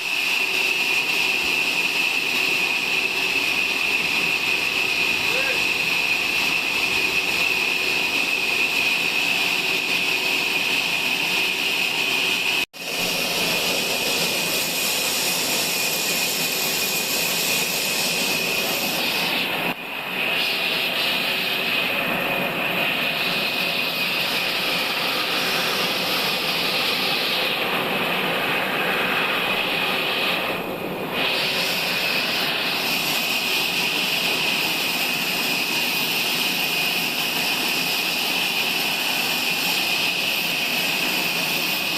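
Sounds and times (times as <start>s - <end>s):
sawmill saw cutting log: 0.0s - 19.7s, 31.2s - 41.9s.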